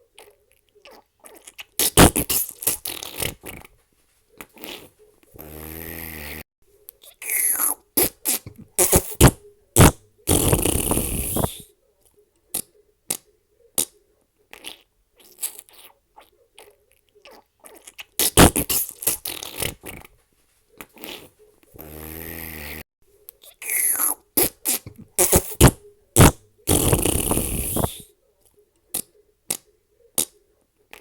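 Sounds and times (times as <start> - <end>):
fart sounds: 0.9 - 3.7, 4.4 - 6.4, 7.0 - 11.6, 12.5 - 16.0, 17.3 - 20.1, 20.8 - 22.8, 23.4 - 28.1
short pops: 8.0 - 11.6, 18.2 - 19.7, 24.4 - 28.0.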